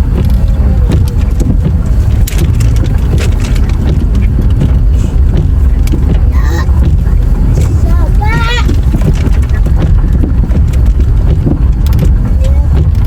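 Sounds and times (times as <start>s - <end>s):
car driving rumble: 0.0s - 13.0s
sharp clicks and ticks: 0.0s - 13.0s
wind buffeting: 0.0s - 13.0s
person speaking: 6.3s - 8.8s.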